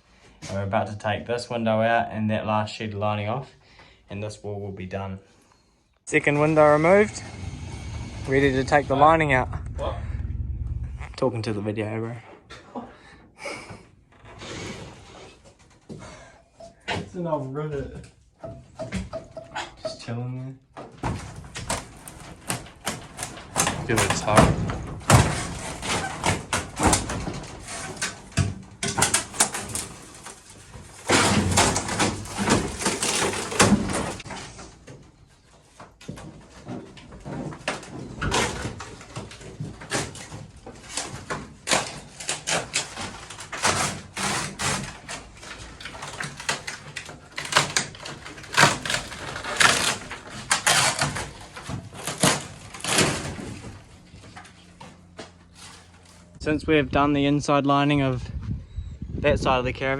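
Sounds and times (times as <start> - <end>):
demolition knocks and scraping: 6.1 - 12.4, 16.7 - 56.4.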